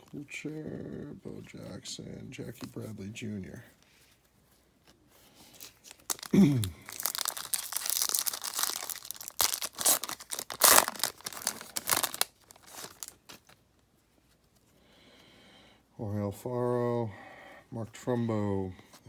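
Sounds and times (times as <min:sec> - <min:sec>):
wrapper rustling: 0:04.1 - 0:14.7
card pack wrapper tearing: 0:05.5 - 0:13.6.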